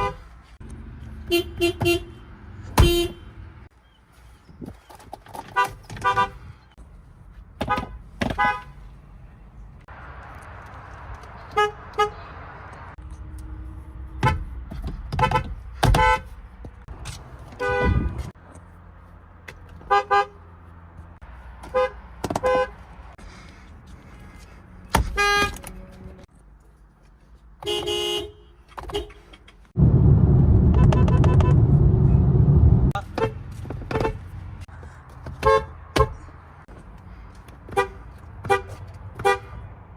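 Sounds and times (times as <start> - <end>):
car horns honking: 0.0 - 0.3, 1.2 - 3.6, 5.5 - 6.4, 7.6 - 8.8, 11.5 - 12.4, 15.1 - 16.4, 17.5 - 18.3, 19.8 - 20.5, 21.6 - 22.9, 24.8 - 26.1, 27.6 - 29.4, 30.6 - 32.0, 33.0 - 34.3, 35.4 - 36.3, 37.7 - 39.6
road noise: 0.0 - 39.9.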